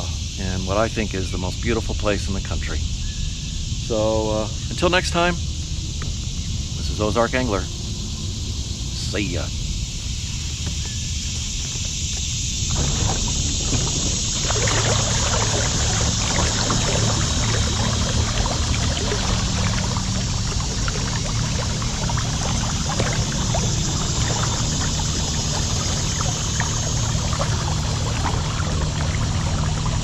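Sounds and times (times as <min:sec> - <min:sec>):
water splashing and trickling: 0:03.9 - 0:30.0.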